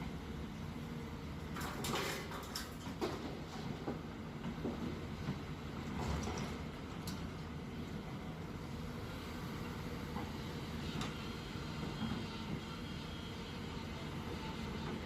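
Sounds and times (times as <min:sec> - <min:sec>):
excavator diesel engine running: 0:03.3 - 0:15.0.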